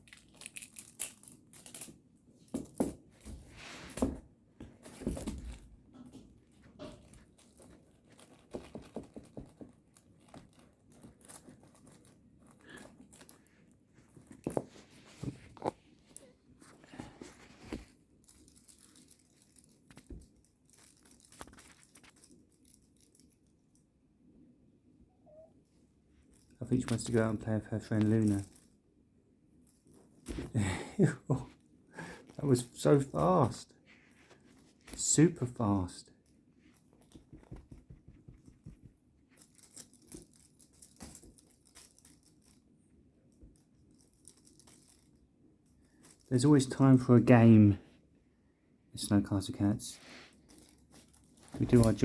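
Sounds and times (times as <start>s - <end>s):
cat toy crinkling and rustling: 0.0s - 23.9s, 25.3s - 48.0s, 49.0s - 52.0s.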